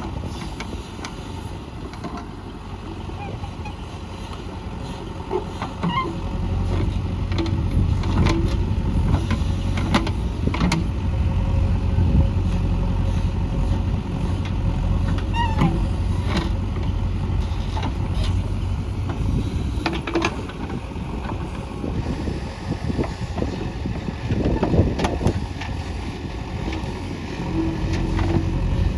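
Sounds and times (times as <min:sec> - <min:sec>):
backhoe diesel engine running: 0:00.0 - 0:28.9
short squeaks: 0:15.1 - 0:16.6.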